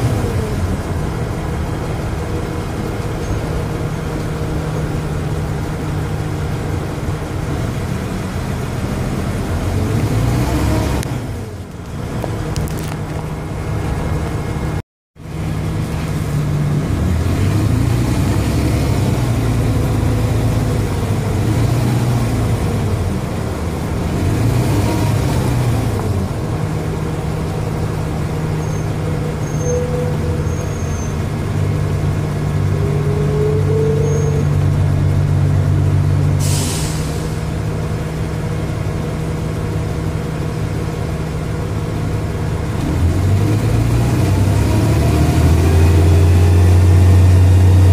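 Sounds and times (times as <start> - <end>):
bus engine working: 0.0 - 47.9
air brake hiss: 36.4 - 37.5.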